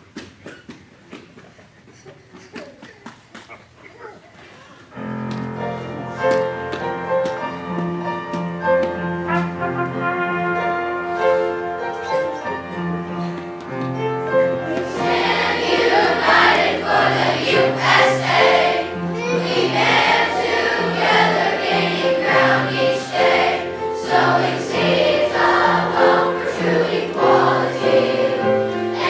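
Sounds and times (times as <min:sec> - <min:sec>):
children's choir singing: 0:04.9 - 0:29.0.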